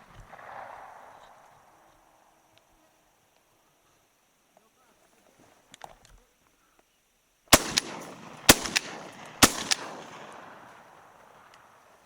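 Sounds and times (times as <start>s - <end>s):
faint echoing crack: 0.0s - 2.8s, 7.6s - 12.0s
shotgun shots: 7.5s - 11.5s.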